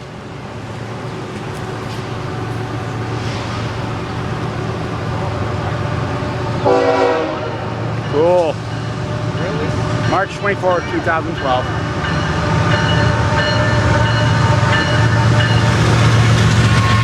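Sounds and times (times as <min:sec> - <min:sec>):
freight train rumbling past: 0:00.0 - 0:17.0
train horn blast: 0:06.6 - 0:07.8.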